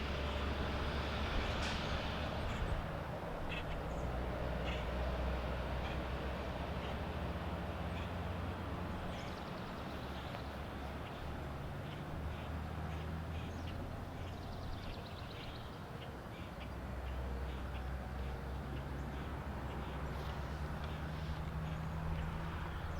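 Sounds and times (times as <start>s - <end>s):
low outdoor rumble: 0.0s - 22.9s
birds chirping: 9.0s - 22.9s.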